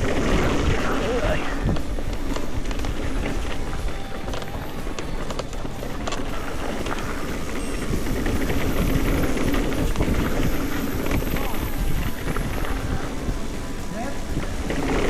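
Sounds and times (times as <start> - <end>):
bike clicks and rattles: 0.0 - 15.0
tyres rumbling on dirt: 0.0 - 15.0
wind on microphone: 0.0 - 15.0.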